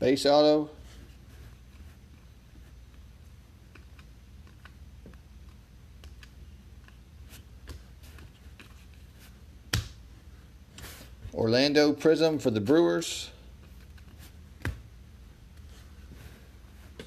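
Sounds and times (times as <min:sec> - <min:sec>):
low steady hum: 0:00.0 - 0:17.0
trading cards flipped by hand: 0:01.6 - 0:10.0.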